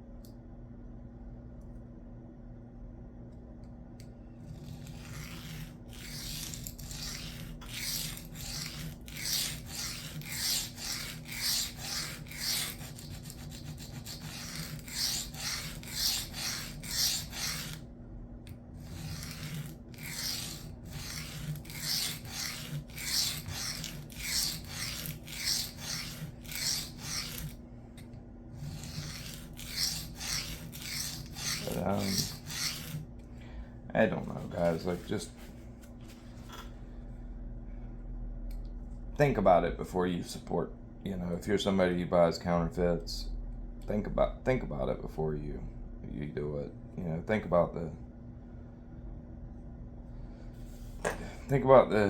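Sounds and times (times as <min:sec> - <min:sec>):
knife stroked on sharpening stone: 0:04.5 - 0:17.8, 0:18.8 - 0:27.6, 0:28.6 - 0:33.0.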